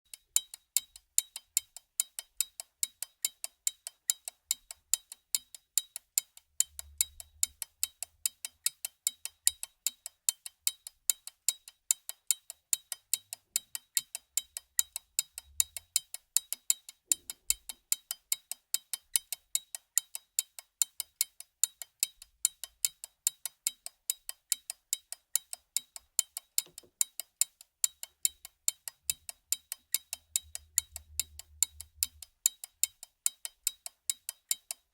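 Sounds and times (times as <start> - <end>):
pocket watch ticking: 0.0 - 34.9.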